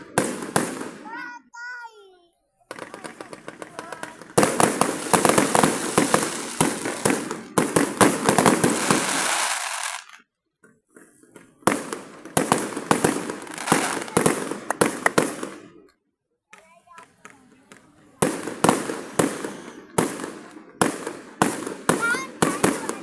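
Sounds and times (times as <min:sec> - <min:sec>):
fireworks cracking and banging: 0:00.0 - 0:02.1, 0:02.7 - 0:15.9, 0:16.5 - 0:23.0.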